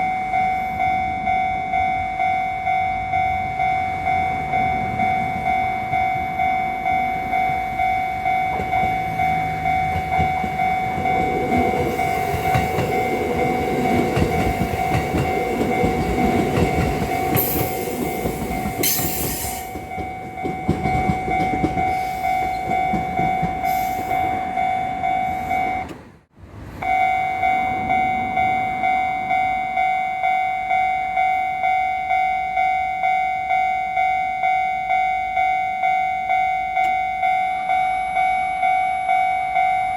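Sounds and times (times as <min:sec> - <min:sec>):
level-crossing bell ringing: 0:00.0 - 0:25.9, 0:26.8 - 0:39.9
train rumble and wheel clatter: 0:00.3 - 0:31.7.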